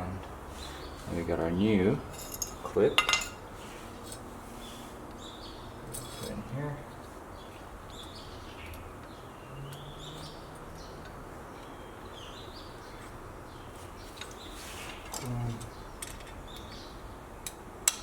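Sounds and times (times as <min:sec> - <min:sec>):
small birds chirping: 0:00.0 - 0:17.7
clicks of small metal parts: 0:15.0 - 0:16.7, 0:17.4 - 0:18.0.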